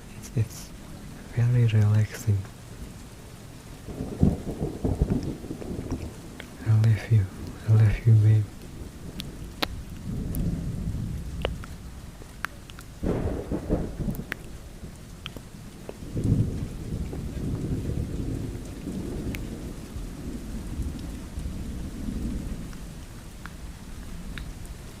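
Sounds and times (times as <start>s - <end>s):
steady rain: 0.0s - 25.0s
rolling thunder: 3.8s - 6.7s, 7.3s - 12.0s, 13.0s - 23.1s.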